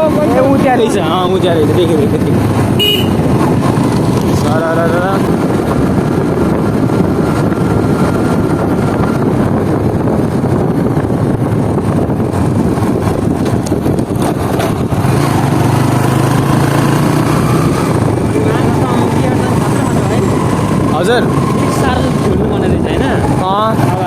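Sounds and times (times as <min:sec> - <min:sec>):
low engine hum: 0:00.0 - 0:24.0
motorcycle engine rumbling: 0:00.0 - 0:24.0.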